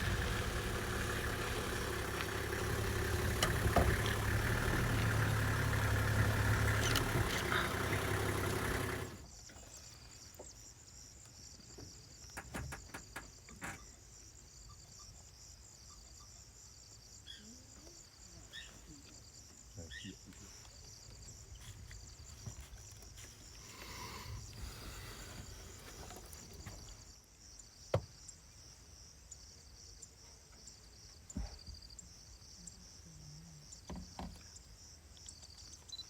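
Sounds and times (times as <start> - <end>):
motor engine running: 0.0 - 9.3, 23.2 - 26.9
insects trilling: 0.0 - 36.0
sharp clicks: 6.4 - 9.2.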